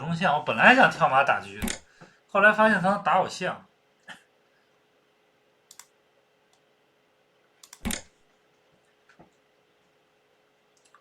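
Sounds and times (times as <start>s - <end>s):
faint steady hum: 0.0s - 11.0s
sharp clicks: 5.7s - 6.0s, 7.6s - 8.1s.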